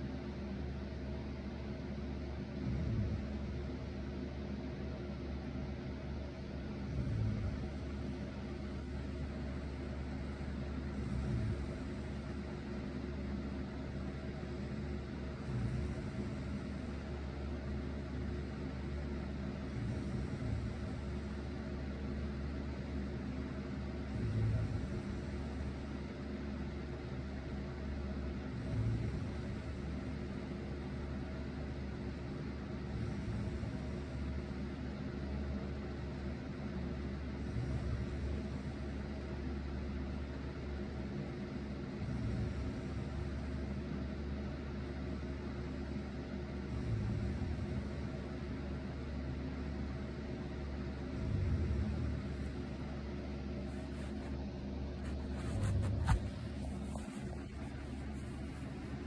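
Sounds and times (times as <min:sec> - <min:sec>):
fan droning: 0:00.0 - 0:59.0
electric fan humming: 0:49.7 - 0:59.0.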